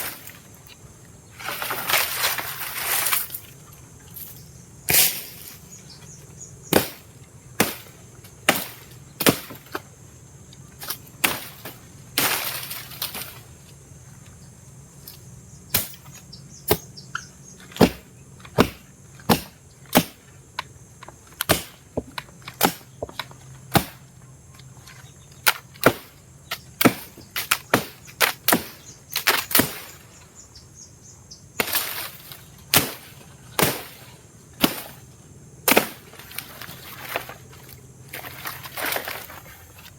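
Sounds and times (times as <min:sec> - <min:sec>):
palm fronds rustling swish: 0:01.3 - 0:05.8, 0:10.8 - 0:13.8, 0:31.6 - 0:35.1, 0:35.7 - 0:39.9
chopping strokes on wood: 0:06.7 - 0:09.8, 0:10.8 - 0:13.4, 0:15.7 - 0:16.9, 0:17.6 - 0:20.4, 0:21.1 - 0:24.1, 0:25.4 - 0:30.0, 0:31.6 - 0:32.1, 0:32.7 - 0:35.0, 0:35.7 - 0:36.2.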